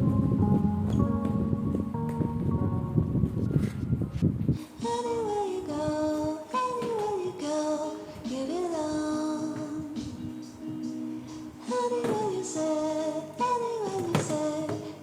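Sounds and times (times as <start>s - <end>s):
background music: 0.0s - 15.0s
woman singing: 4.6s - 15.0s.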